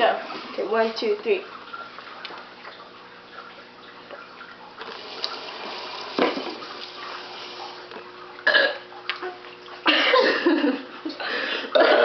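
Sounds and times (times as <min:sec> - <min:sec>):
people burping: 0:08.4 - 0:08.9, 0:11.6 - 0:12.0.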